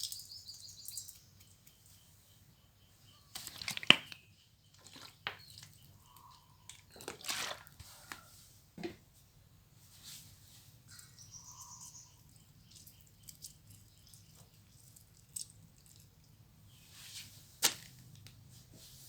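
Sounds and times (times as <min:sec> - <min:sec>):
faint bird chirp: 0:00.0 - 0:07.0, 0:10.8 - 0:14.8.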